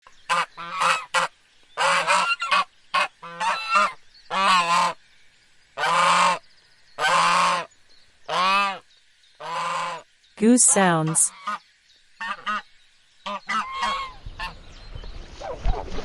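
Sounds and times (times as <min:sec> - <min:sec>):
goose honking: 0:00.3 - 0:05.0, 0:05.8 - 0:06.4, 0:07.0 - 0:07.7, 0:08.3 - 0:08.8, 0:09.4 - 0:10.0, 0:12.2 - 0:12.6, 0:13.2 - 0:14.6.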